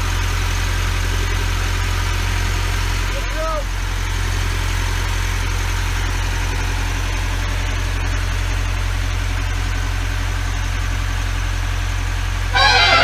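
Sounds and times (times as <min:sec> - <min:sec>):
boat engine running: 0:00.0 - 0:11.0, 0:12.4 - 0:13.0.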